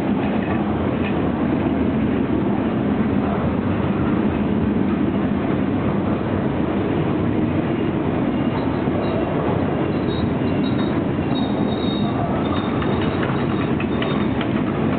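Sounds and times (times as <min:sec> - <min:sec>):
train wheels rumbling on rail: 0:00.0 - 0:14.9
thin high wheel squeals: 0:08.4 - 0:14.4.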